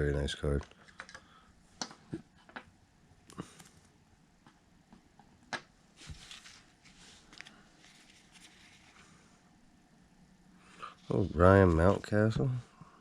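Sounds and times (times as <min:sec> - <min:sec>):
trading cards rustling: 0:06.0 - 0:09.0.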